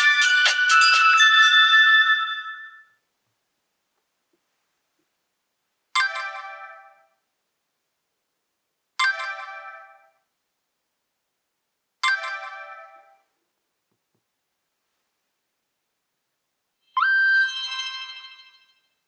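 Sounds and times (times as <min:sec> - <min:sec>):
bright ringtone chime: 0:00.0 - 0:03.0, 0:06.0 - 0:07.2, 0:09.0 - 0:10.2, 0:12.0 - 0:13.3, 0:16.8 - 0:19.0.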